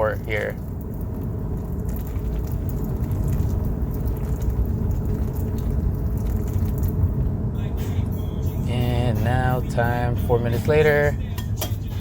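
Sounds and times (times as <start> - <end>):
hot water pouring: 0.0 - 8.1
low rumble: 0.0 - 12.0.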